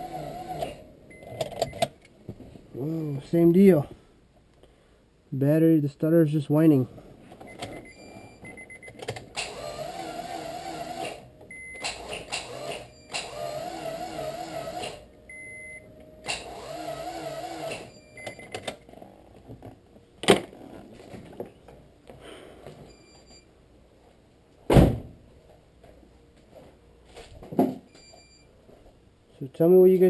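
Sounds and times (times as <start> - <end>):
car starter motor whining: 9.3 - 11.2, 11.8 - 15.0, 16.2 - 17.9.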